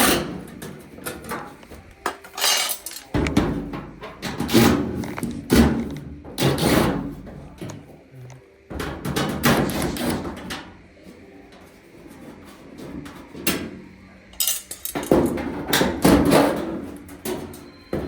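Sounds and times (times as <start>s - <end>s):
sheet metal panel clattering: 0.0s - 7.4s, 14.4s - 17.6s.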